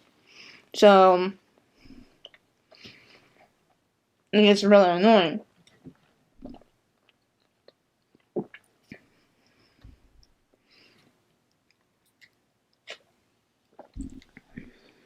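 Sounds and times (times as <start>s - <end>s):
person chewing food: 1.9s - 3.8s, 5.5s - 15.0s.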